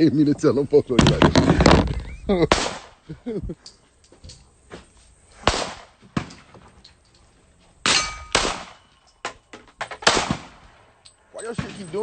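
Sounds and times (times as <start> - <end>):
faint gunshots: 2.5 - 2.9, 5.4 - 6.4, 7.9 - 8.8, 10.0 - 10.7
loud gunshots: 2.5 - 2.9, 5.4 - 5.9, 7.9 - 8.8, 10.0 - 10.6
metallic ringing: 7.9 - 9.5.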